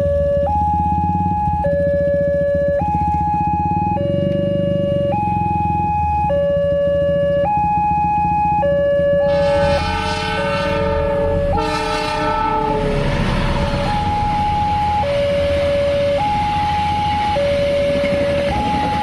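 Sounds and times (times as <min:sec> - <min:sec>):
level crossing two-tone alarm: 0:07.1 - 0:19.0
train horn blasts: 0:09.2 - 0:14.9
train rushing past: 0:09.3 - 0:16.0.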